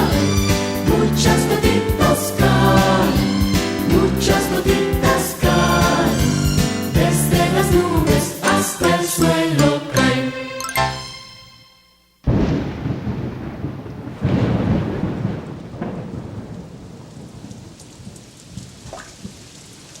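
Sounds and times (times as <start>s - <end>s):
rain hissing: 0.0s - 8.2s
thunder rumbling: 12.3s - 19.8s.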